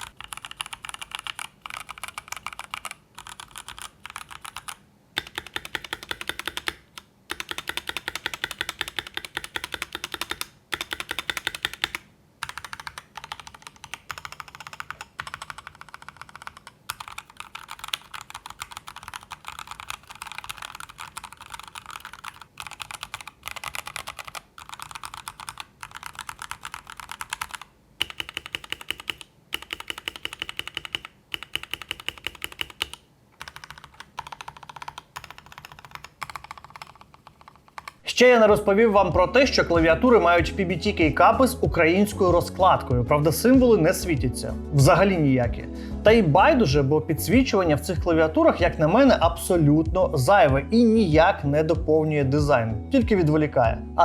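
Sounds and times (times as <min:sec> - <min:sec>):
rapid typing on mechanical keyboard: 0:00.0 - 0:38.0.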